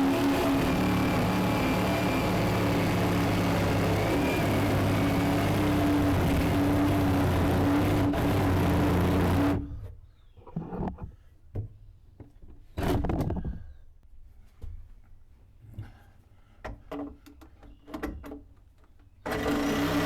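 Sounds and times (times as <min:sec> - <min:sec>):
power tool humming: 0:00.0 - 0:09.6, 0:19.3 - 0:20.0.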